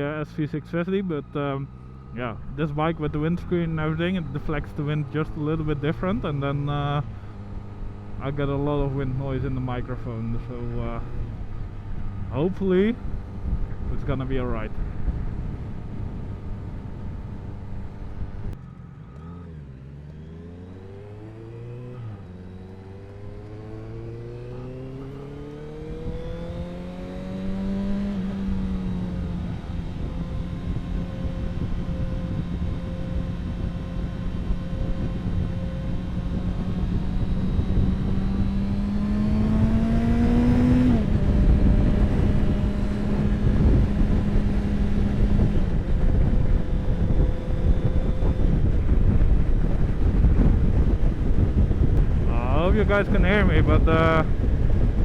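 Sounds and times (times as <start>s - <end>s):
motorcycle engine accelerating: 0.7s - 55.0s
wind rumble on microphone: 10.5s - 18.6s, 23.8s - 55.0s.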